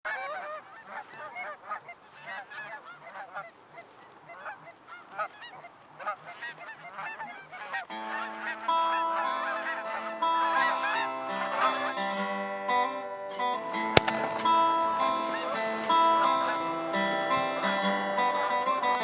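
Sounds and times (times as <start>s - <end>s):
geese honking: 0.1s - 19.0s
music: 7.9s - 19.0s.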